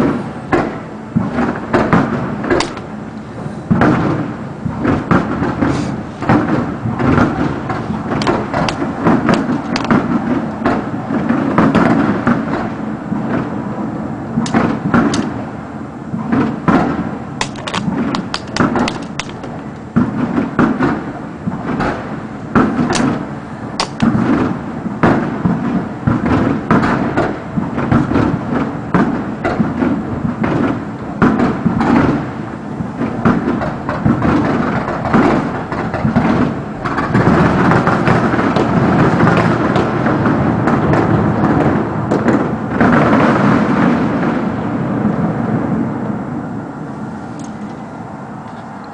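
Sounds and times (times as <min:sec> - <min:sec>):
fireworks cracking: 0:00.0 - 0:46.4
fireworks booming: 0:00.0 - 0:48.9.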